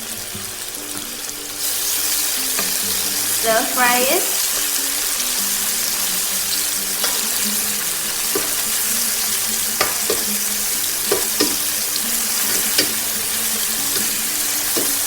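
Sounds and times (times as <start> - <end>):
sauce sizzling in hot oil: 0.0 - 15.0
utensil clicking against pan: 2.5 - 3.0, 5.8 - 15.0.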